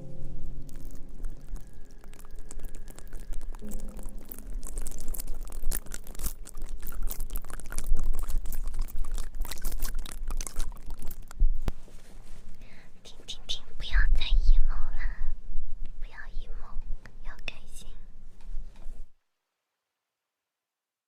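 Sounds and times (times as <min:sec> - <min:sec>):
faint hum: 0:00.0 - 0:19.6
close crackles and clicks: 0:00.4 - 0:11.8.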